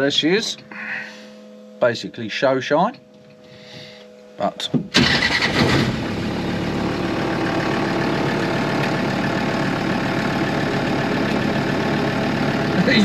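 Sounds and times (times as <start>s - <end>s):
diesel engine idling: 5.0s - 13.0s.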